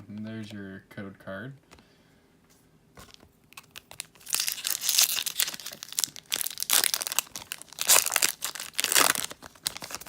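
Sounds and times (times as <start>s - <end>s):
foil wrapper crinkling and tearing: 3.5s - 10.0s.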